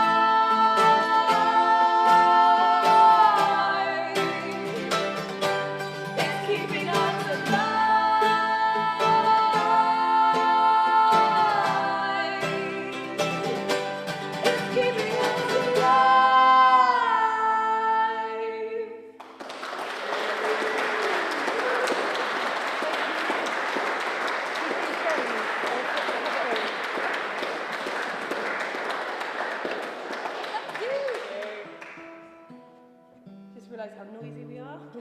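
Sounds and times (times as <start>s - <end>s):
voices singing in harmony: 0.0s - 19.2s
acoustic guitars: 0.0s - 19.6s, 20.3s - 35.0s
audience applauding: 19.2s - 32.3s.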